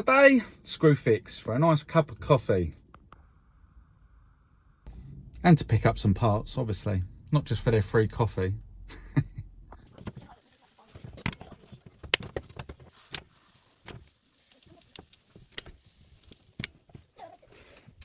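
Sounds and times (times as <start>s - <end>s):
faint steady hiss: 12.7s - 18.0s.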